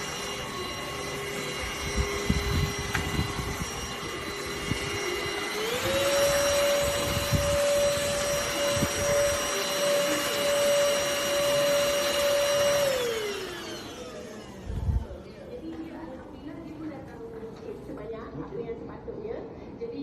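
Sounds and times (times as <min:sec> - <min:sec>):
vacuum cleaner motor whine: 0:00.0 - 0:15.8.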